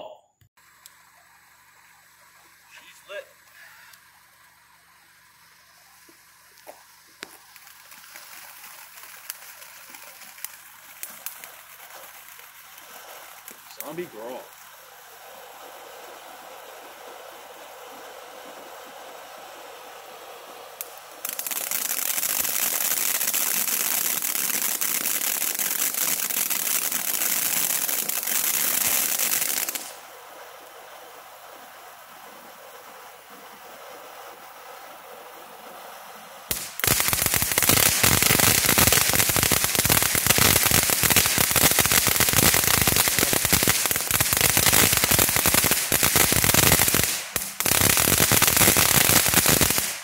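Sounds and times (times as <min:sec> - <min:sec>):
firework fountain hissing: 0:00.5 - 0:50.0
dense rapid crackling: 0:00.9 - 0:15.2, 0:20.8 - 0:30.6, 0:36.5 - 0:50.0.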